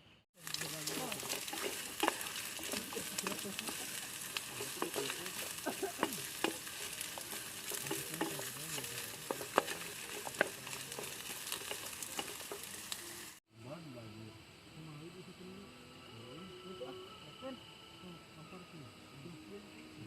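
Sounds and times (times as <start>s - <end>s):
utensil clicking against pan: 0.4s - 13.3s
food sizzling in a pan: 0.4s - 13.4s.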